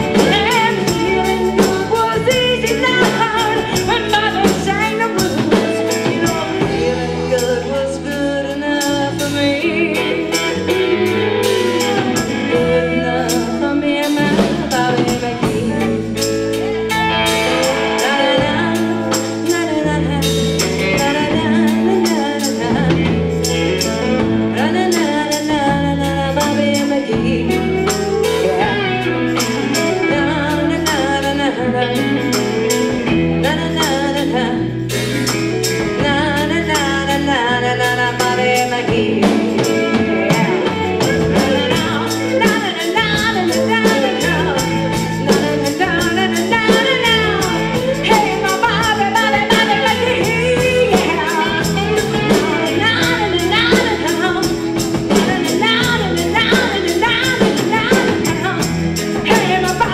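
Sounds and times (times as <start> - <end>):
bass line: 0.0 - 59.9
melodic lead line: 0.0 - 59.9
steady percussion beat: 8.5 - 30.9, 37.9 - 59.9.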